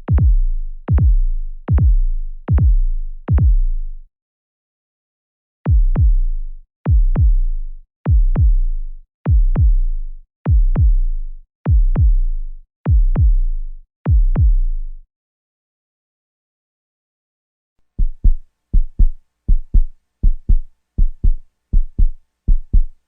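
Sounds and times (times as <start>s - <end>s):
heartbeat double thumps: 0.0s - 3.7s, 5.7s - 6.3s, 6.9s - 7.4s, 8.1s - 8.7s, 9.3s - 9.8s, 10.5s - 11.0s, 11.7s - 12.3s, 12.9s - 13.5s, 14.1s - 14.7s.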